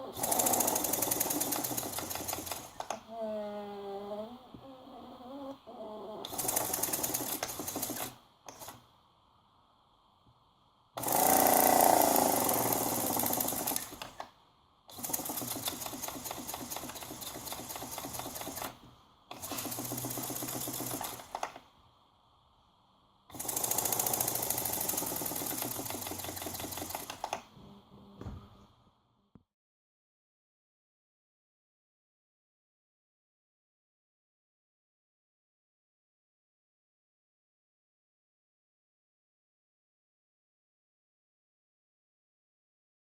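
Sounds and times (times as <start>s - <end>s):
fuel pump motor rattling: 11.0s - 14.2s, 14.9s - 21.5s, 23.3s - 27.4s.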